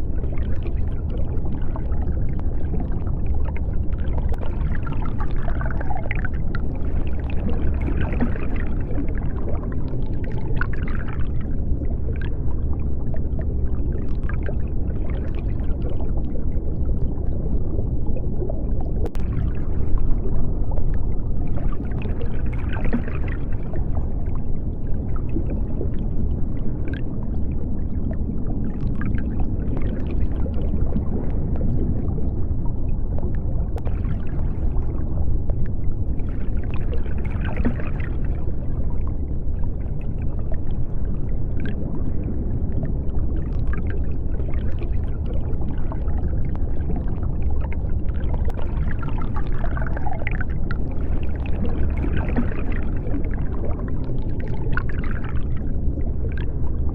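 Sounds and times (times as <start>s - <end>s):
bubbling water: 0.0s - 56.9s
deep underwater rumble: 0.0s - 56.9s.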